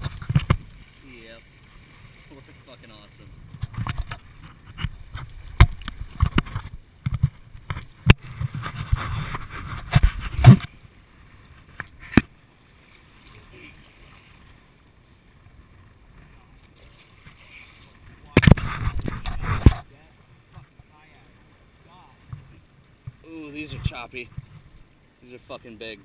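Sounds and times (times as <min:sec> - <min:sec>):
water slapping against kayak hull: 0:00.0 - 0:02.7, 0:03.3 - 0:10.8, 0:11.5 - 0:14.6, 0:16.6 - 0:19.9
rush of water: 0:00.0 - 0:26.0.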